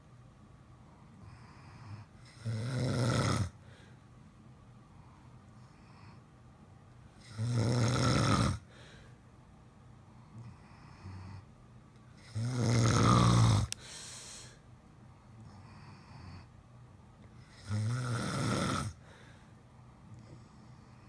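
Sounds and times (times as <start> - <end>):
loud snores: 1.3 - 3.6, 7.2 - 8.6, 12.2 - 13.7, 17.5 - 19.0
soft high breathing: 3.6 - 4.1, 8.6 - 9.3, 13.6 - 14.7, 19.0 - 21.0.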